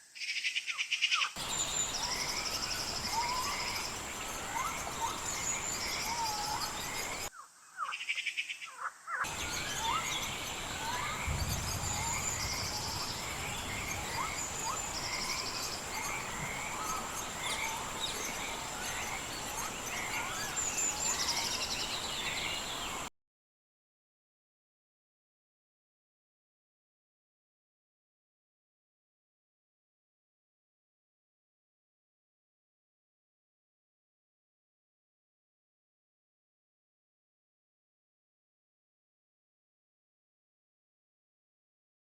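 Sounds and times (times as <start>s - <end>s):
birds chirping and trilling: 0.2s - 23.1s.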